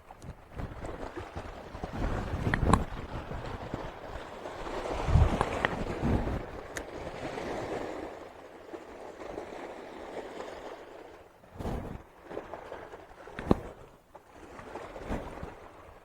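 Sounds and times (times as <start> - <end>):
wind: 0.0 - 16.0.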